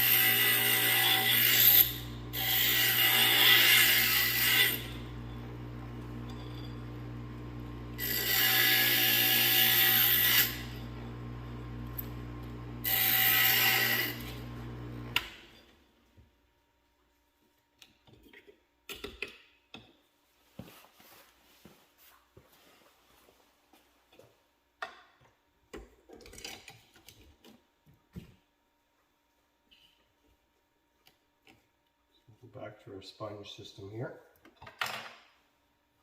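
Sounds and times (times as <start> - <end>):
grinder motor hum: 0.0 - 15.4
glass grinder grinding glass: 0.0 - 15.7.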